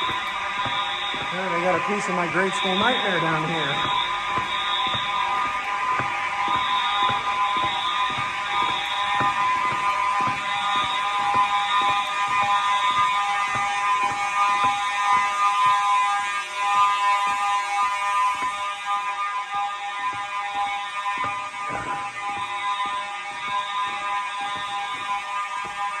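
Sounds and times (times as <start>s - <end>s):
fire alarm horns sounding: 0.0s - 15.4s.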